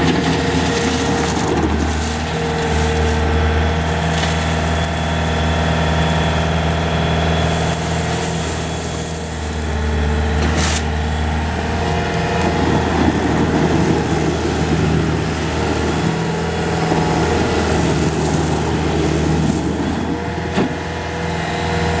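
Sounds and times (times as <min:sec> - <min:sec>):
loader diesel engine running: 0:00.0 - 0:22.0.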